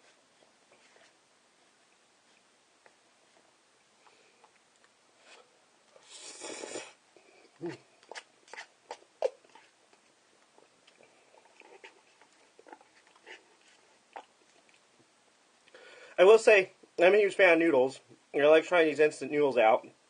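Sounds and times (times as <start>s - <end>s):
wet mouth clicks and chewing: 8.0s - 13.4s, 14.1s - 14.9s.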